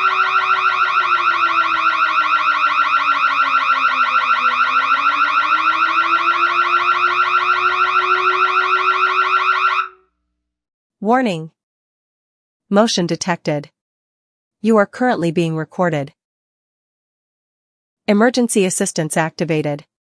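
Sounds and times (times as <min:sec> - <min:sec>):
burglar alarm warbling: 0:00.0 - 0:10.0.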